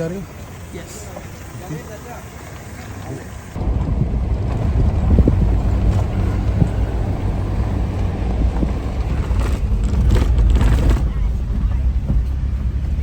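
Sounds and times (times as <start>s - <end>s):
vehicle driving on bumpy road: 0.0s - 13.0s
wind buffeting microphone: 3.6s - 13.0s.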